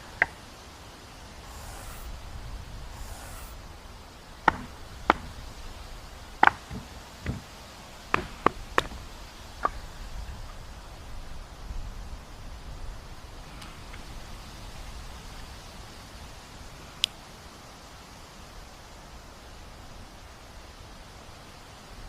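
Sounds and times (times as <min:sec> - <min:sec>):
tool knocking on wood: 0:04.5 - 0:05.3, 0:06.4 - 0:07.5, 0:08.1 - 0:09.0.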